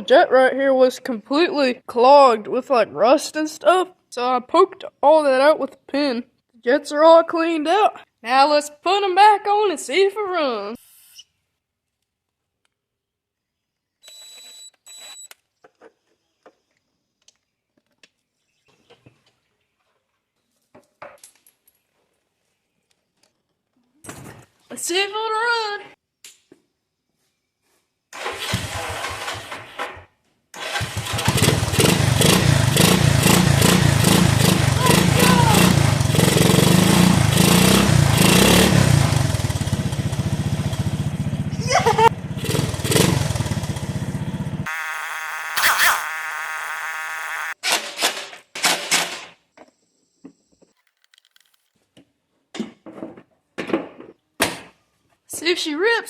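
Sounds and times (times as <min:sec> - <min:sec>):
engine revving and idling: 0:31.2 - 0:41.4, 0:42.3 - 0:47.6.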